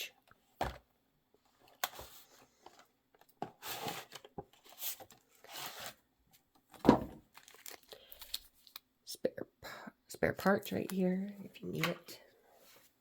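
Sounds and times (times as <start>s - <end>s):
packaging rustling: 6.7s - 8.8s.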